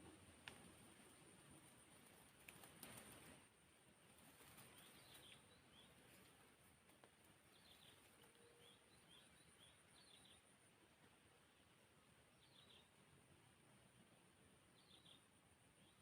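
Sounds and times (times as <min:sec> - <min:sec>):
bird chirps: 0:04.7 - 0:06.2, 0:07.5 - 0:10.5, 0:12.4 - 0:12.9, 0:14.8 - 0:16.0.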